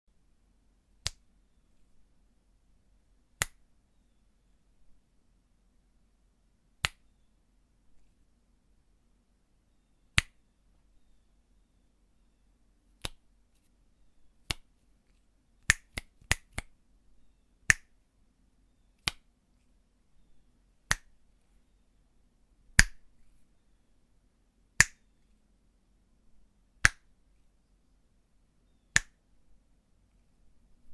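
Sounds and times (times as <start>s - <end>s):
fingers snapping: 1.0s - 1.2s, 3.4s - 3.6s, 6.8s - 7.0s, 10.2s - 10.4s, 13.0s - 13.2s, 14.4s - 14.7s, 15.6s - 16.7s, 19.0s - 19.2s, 20.9s - 21.1s, 22.8s - 23.0s, 24.8s - 25.0s, 26.8s - 27.1s, 28.9s - 29.2s.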